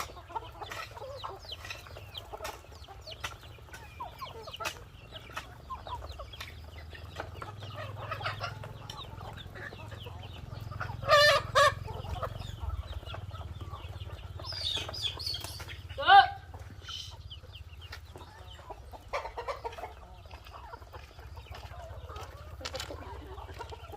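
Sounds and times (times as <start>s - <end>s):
chickens clucking: 0.0s - 23.9s
chicken squawks: 10.8s - 17.2s.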